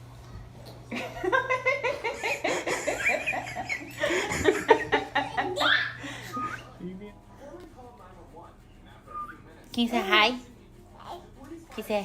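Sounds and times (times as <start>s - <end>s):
baby laughing: 2.8s - 6.7s.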